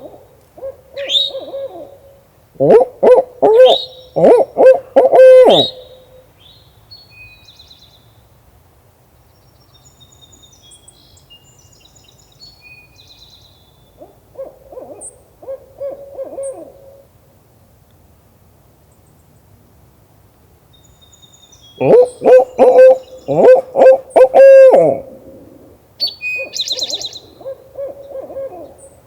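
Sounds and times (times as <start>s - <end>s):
distant owl hooting: 0.0s - 6.2s, 14.0s - 17.0s, 21.8s - 28.9s
songbirds chirping faintly: 0.0s - 17.1s, 18.8s - 29.0s
person imitating owl hooting: 2.6s - 5.9s, 21.8s - 25.8s.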